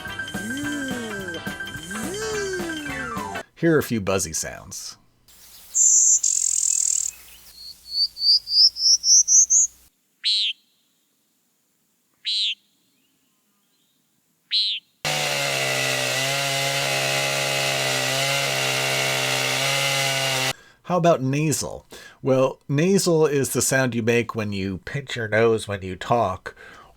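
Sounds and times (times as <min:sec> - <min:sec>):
buzzy bird notes: 0:05.4 - 0:10.5
buzzy bird calls: 0:05.4 - 0:10.7, 0:12.2 - 0:12.7.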